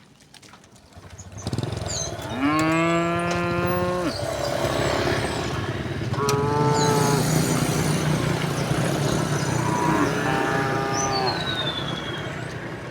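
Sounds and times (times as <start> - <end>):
vehicle engine rumbling: 0.9 - 12.9
cow mooing: 2.1 - 5.5, 6.1 - 8.1, 9.3 - 11.8.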